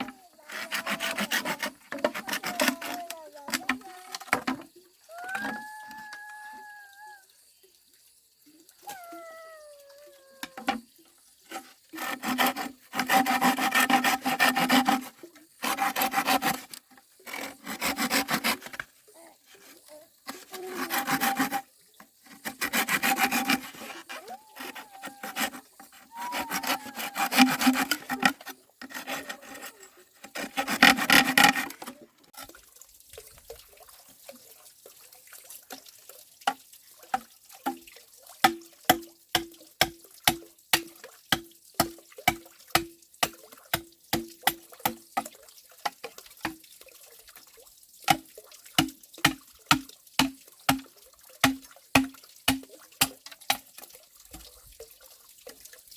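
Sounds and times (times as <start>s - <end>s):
hand saw rasping through wood: 0.0s - 3.1s, 11.5s - 18.8s, 20.3s - 21.6s, 22.2s - 31.8s.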